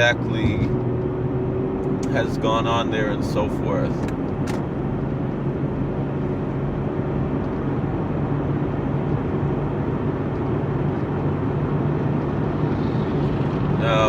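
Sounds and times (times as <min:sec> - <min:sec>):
car engine hum: 0:00.0 - 0:14.0
road noise: 0:00.0 - 0:14.0.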